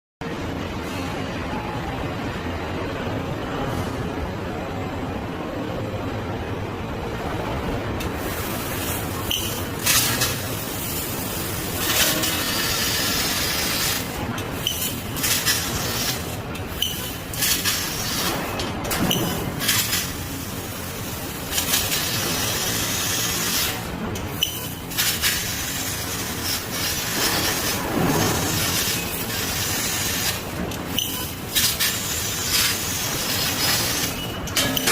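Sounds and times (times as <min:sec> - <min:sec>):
laser cutting machine hissing: 0:08.2 - 0:34.9.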